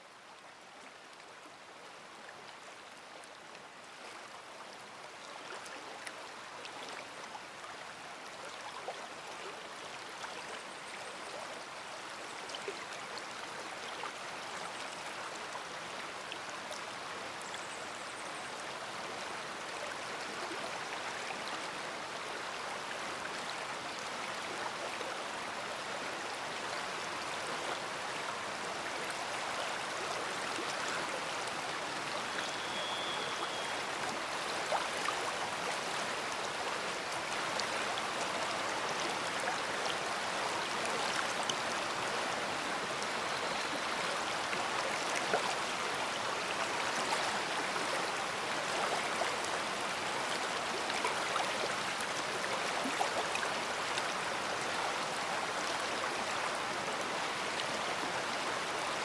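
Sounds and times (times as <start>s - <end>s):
river rushing: 18.8s - 59.0s.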